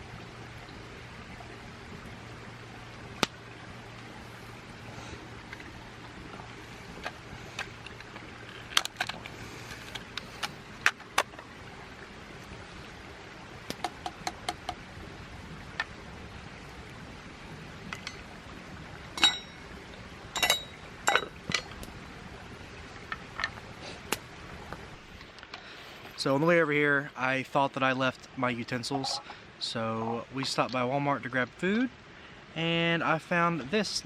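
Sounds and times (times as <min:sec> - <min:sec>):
metal clinks ringing: 0:19.2 - 0:19.6, 0:20.4 - 0:21.3.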